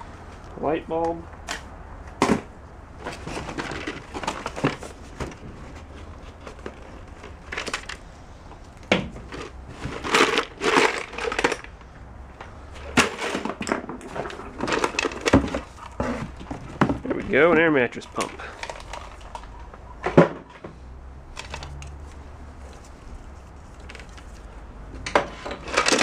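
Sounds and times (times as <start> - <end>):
objects knocking and clattering: 1.5 - 8.0, 8.8 - 11.7, 12.4 - 20.8, 21.4 - 26.0
packaging rustling and crinkling: 3.0 - 8.1, 18.0 - 19.5, 21.4 - 24.6.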